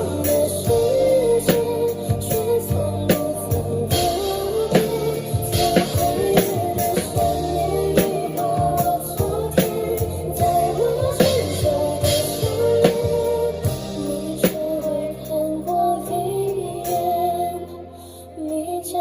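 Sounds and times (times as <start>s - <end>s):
steady drum beat: 0.0s - 15.0s
person singing over backing track: 0.0s - 19.0s.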